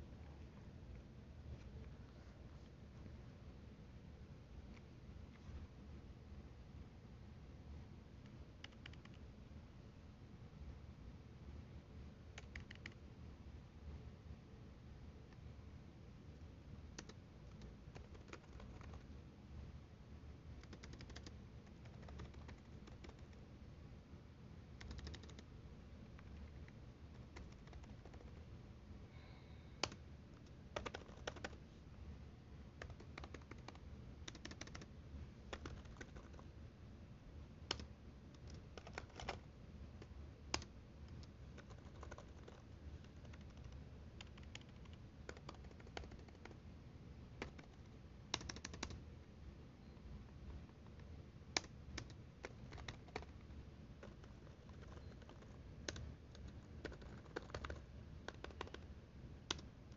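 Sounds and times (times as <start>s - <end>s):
faint low hum: 0.0s - 59.9s
keyboard keys clicking: 8.6s - 9.2s, 12.4s - 13.0s, 17.0s - 19.0s, 20.6s - 23.4s, 24.8s - 25.4s, 26.2s - 28.4s, 29.8s - 31.6s, 32.8s - 34.9s, 35.5s - 36.4s, 37.7s - 39.4s, 40.0s - 46.6s, 47.4s - 49.0s, 51.6s - 53.4s, 54.0s - 58.8s.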